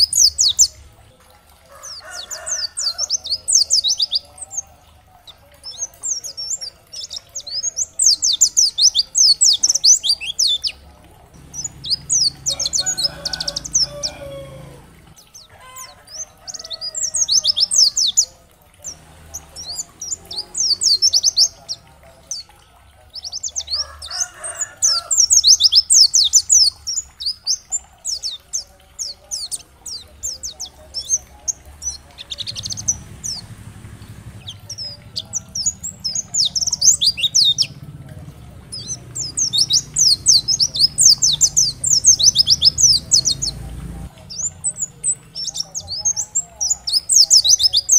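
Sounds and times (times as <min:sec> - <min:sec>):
bird twittering chirps: 0:00.0 - 0:00.8, 0:11.4 - 0:22.5, 0:23.2 - 0:47.9.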